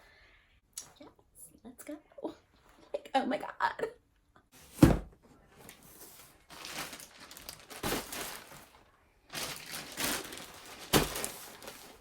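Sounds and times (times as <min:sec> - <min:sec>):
packaging rustling: 0:05.7 - 0:12.0.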